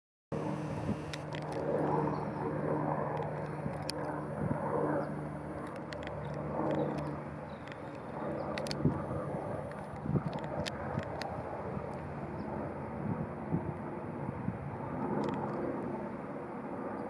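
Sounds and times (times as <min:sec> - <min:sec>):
low engine hum: 0:00.3 - 0:03.1
faint clicks: 0:05.6 - 0:08.9, 0:09.6 - 0:12.0.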